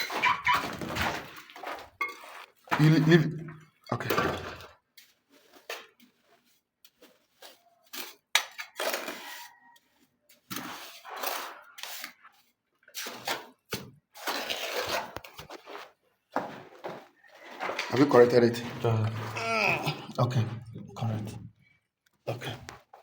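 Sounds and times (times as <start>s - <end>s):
trowel scraping mortar on wall: 4.2s - 16.0s.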